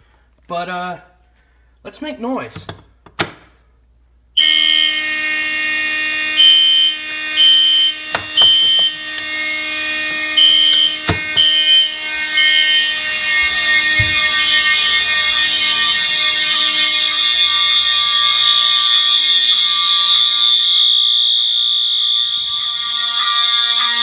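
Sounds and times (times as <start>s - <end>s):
electronic horn beeping: 4.4s - 24.0s
fire alarm horn buzzing: 4.4s - 24.0s.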